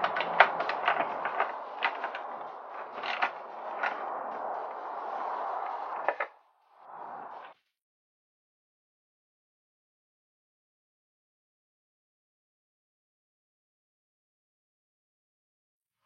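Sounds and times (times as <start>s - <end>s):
steady background noise: 0.0s - 7.6s.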